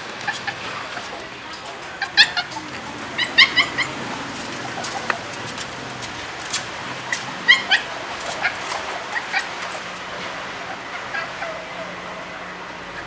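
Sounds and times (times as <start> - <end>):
puppy whimpering: 0.0 - 13.0.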